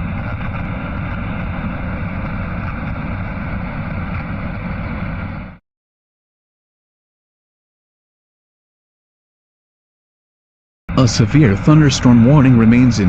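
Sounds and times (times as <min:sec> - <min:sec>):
radio static hiss: 0:00.0 - 0:05.6, 0:10.9 - 0:13.0.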